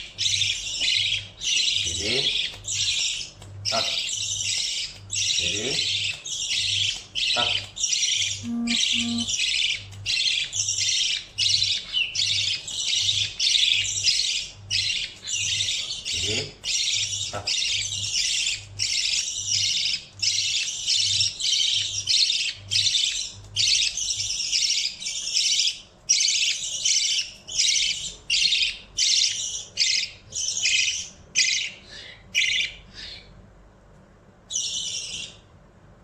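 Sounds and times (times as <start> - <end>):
budgerigar rasping begging calls: 3.7 - 11.7.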